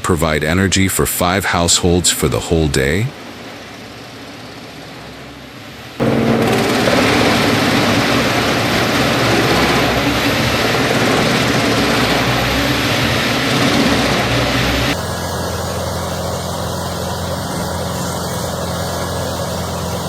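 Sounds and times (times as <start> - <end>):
engine drone: 0.0 - 20.0
wood chipper grinding and shredding: 6.0 - 20.0.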